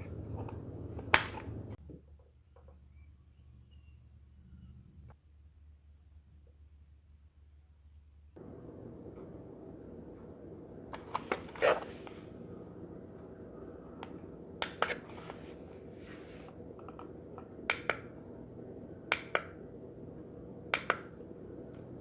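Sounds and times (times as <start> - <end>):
plastic button clicks: 14.0 - 15.6, 16.5 - 18.2, 19.0 - 19.6, 20.7 - 21.2.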